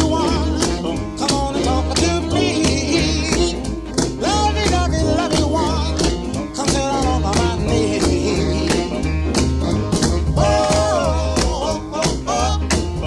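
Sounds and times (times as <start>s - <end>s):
country song with singing and guitar: 0.0s - 13.0s.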